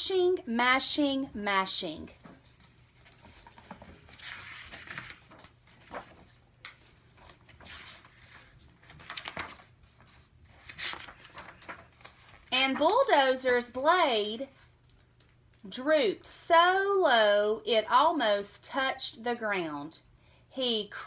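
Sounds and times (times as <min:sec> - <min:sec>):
book page rustling and turning: 0:02.2 - 0:13.2.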